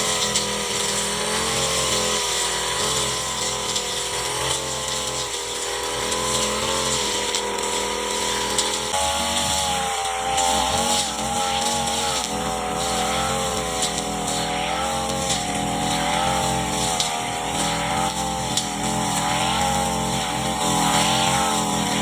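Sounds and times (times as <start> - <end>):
brush cutter engine running: 0.0 - 22.0.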